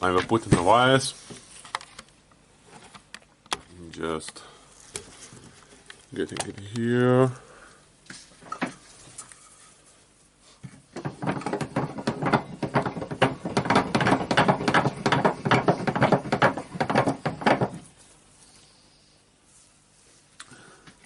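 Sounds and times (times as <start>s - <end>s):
metal knock: 11.0s - 17.8s.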